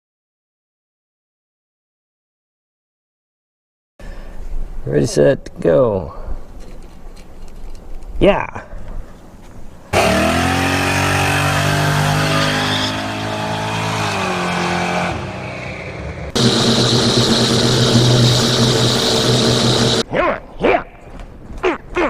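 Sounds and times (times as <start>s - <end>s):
loud motor running: 10.0s - 14.1s, 15.0s - 20.0s
loud machine drone: 10.0s - 20.0s.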